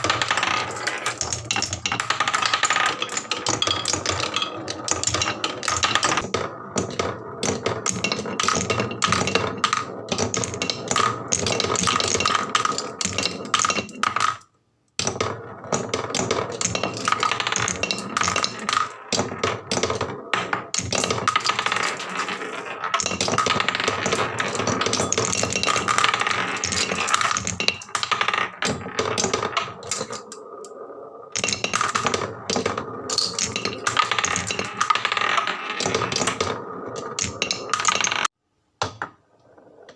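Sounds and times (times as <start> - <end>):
marbles rolling down wooden tracks: 0.0 - 38.4, 39.3 - 39.9.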